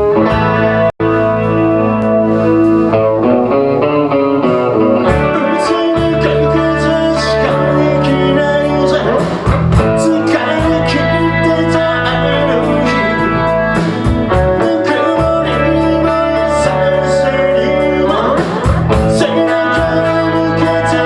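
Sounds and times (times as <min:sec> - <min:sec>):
bass and drums: 0:00.0 - 0:21.0
electric guitar chords: 0:00.0 - 0:21.0
person singing: 0:04.5 - 0:21.0.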